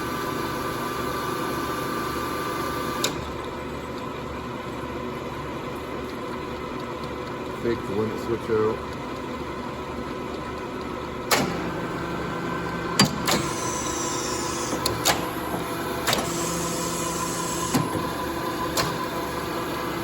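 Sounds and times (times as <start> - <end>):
hydraulic hum: 11.2 - 20.0
deeper hydraulic tone: 11.4 - 20.0.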